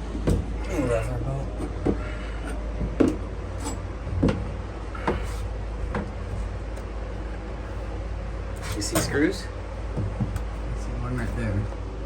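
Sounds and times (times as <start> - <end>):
steady low hum: 0.0 - 12.0
paneling knocking and cracking: 9.9 - 10.5.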